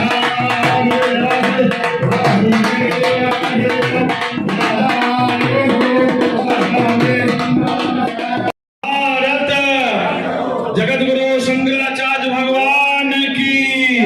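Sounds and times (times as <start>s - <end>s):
hand drum rhythm: 0.0s - 8.5s.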